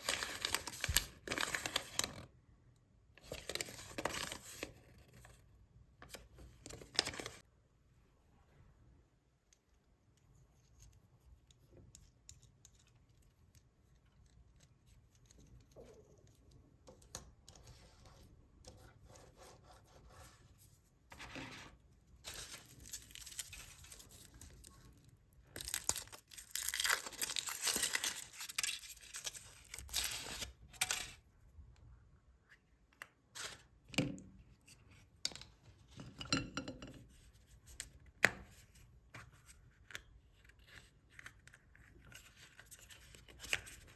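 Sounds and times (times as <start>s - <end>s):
foil wrapper crinkling: 25.6s - 31.1s.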